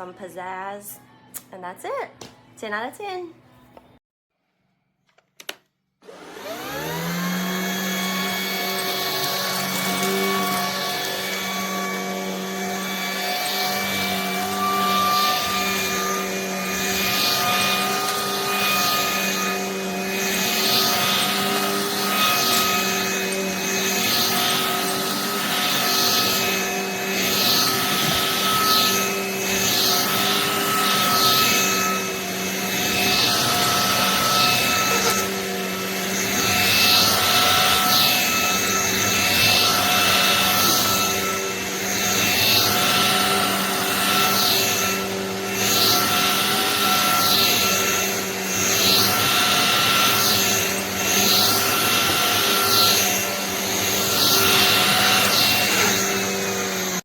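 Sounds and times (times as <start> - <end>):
vacuum cleaner motor whine: 6.0 - 57.0.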